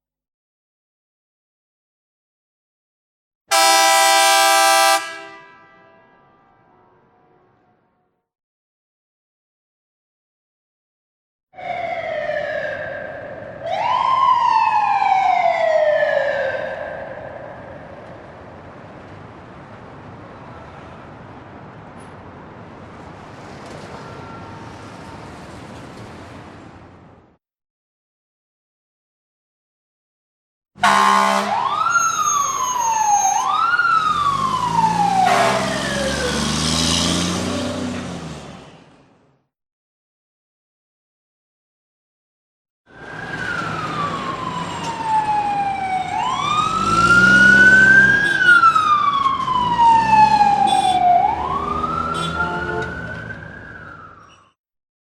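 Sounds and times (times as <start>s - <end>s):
police siren wailing: 3.5s - 5.2s, 11.6s - 18.6s, 23.4s - 25.8s, 30.8s - 37.9s, 42.9s - 54.6s
horn blast: 3.5s - 8.0s, 30.8s - 31.6s, 35.2s - 35.9s, 48.0s - 48.8s, 50.6s - 51.1s, 52.0s - 53.0s.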